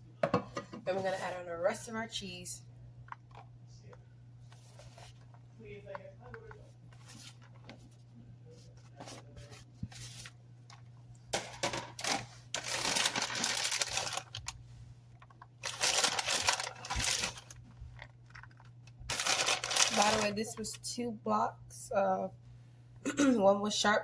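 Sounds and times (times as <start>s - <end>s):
cheddar rustling in baking pan: 12.1s - 14.5s, 15.6s - 17.6s, 19.1s - 20.6s.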